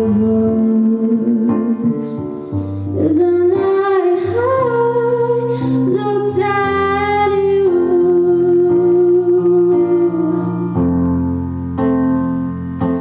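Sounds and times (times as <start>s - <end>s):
electric piano chords: 0.0s - 13.0s.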